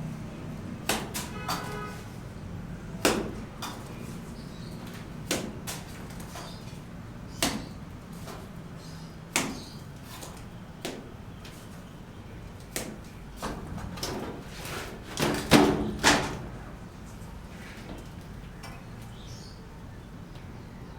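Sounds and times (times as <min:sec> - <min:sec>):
sharp knocks: 0:00.8 - 0:01.9, 0:03.0 - 0:08.5, 0:09.3 - 0:11.6.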